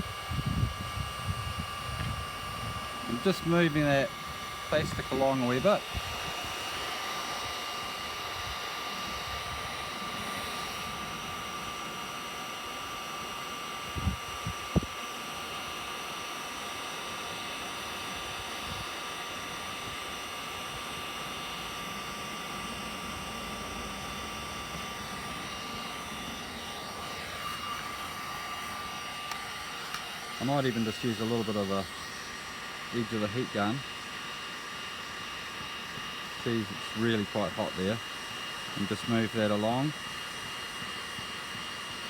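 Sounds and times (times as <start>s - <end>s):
heat gun fan whine: 0.0s - 42.0s.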